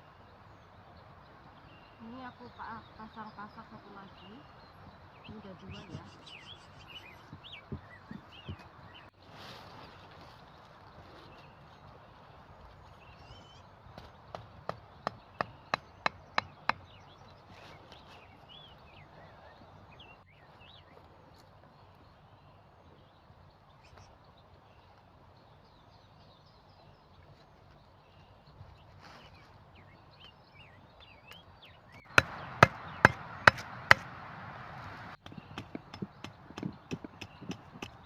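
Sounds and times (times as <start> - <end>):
outdoor background noise: 0.0 - 38.0.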